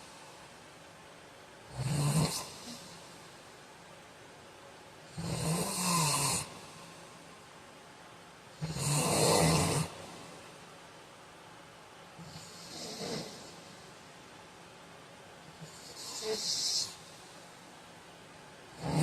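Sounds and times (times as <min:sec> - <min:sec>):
quiet breathing: 0:00.0 - 0:00.8, 0:02.2 - 0:03.6, 0:05.9 - 0:07.5, 0:12.1 - 0:14.2, 0:15.4 - 0:18.2
man snoring: 0:01.7 - 0:03.0, 0:05.1 - 0:06.6, 0:08.6 - 0:10.2, 0:12.2 - 0:13.6, 0:15.6 - 0:17.0, 0:18.8 - 0:19.0.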